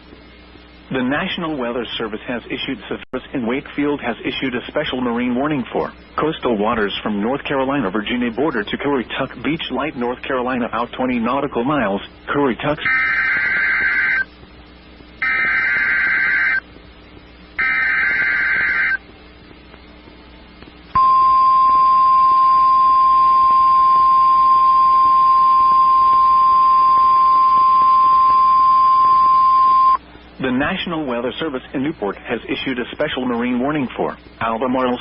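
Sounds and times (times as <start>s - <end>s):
data tone bursts: 12.8s - 14.3s, 15.2s - 16.6s, 17.6s - 19.0s, 21.0s - 30.0s
steady warning alarm tone: 12.8s - 14.3s, 15.2s - 16.6s, 17.6s - 19.0s, 21.0s - 30.0s.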